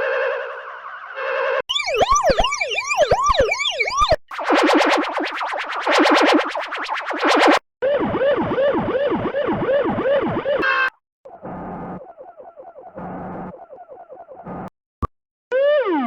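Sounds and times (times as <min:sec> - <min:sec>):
police siren sweeps: 0:00.0 - 0:14.6
steady pitched blare: 0:01.7 - 0:07.6
rapid pulsing warble: 0:01.7 - 0:10.6.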